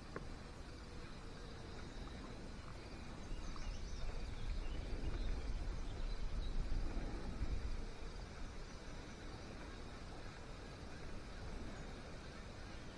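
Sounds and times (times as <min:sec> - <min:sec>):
wind rumble on microphone: 0:00.0 - 0:12.9.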